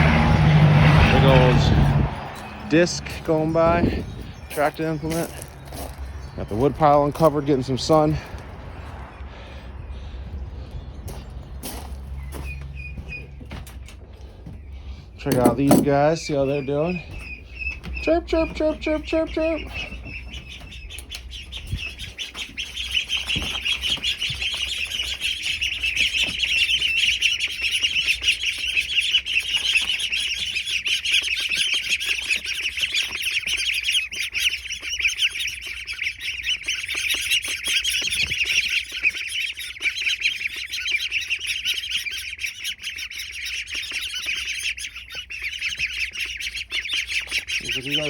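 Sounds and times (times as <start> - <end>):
ducklings peeping: 0.0 - 48.0.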